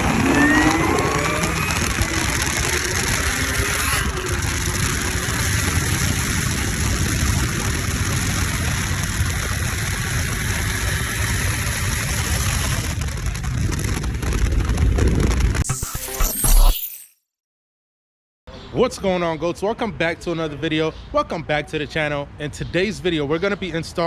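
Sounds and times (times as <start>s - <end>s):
car engine and exhaust running: 0.0s - 15.6s.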